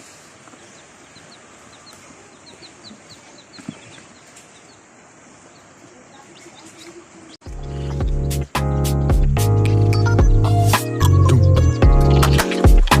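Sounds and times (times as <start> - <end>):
chickens clucking: 0.0 - 8.4, 10.8 - 13.0
small bird chirping: 0.4 - 8.6, 9.6 - 13.0
loud music: 7.5 - 13.0.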